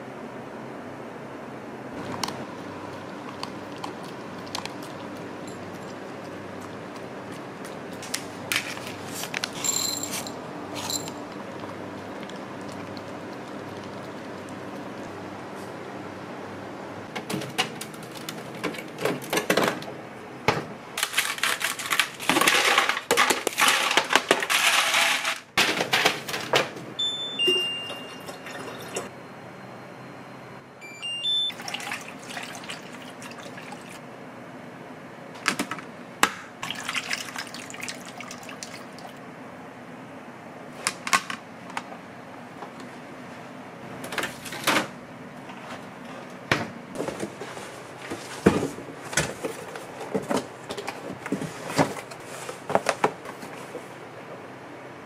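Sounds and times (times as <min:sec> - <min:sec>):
kitchen clicks and clatter: 0:21.0 - 0:26.8
short high electronic beeps: 0:30.8 - 0:31.6
water running from a tap: 0:36.6 - 0:39.1.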